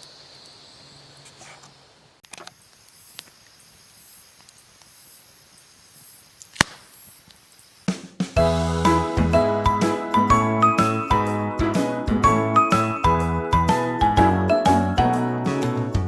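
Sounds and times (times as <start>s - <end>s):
insects chirping: 0.0s - 8.1s
campfire crackling and popping: 6.4s - 7.5s
chiming music: 8.4s - 15.4s.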